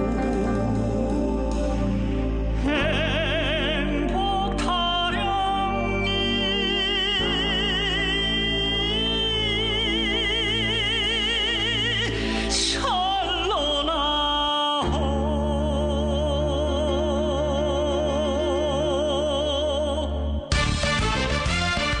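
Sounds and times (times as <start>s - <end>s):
music with wavering vibrato: 0.0s - 14.2s
busier rhythmic tune: 20.5s - 22.0s.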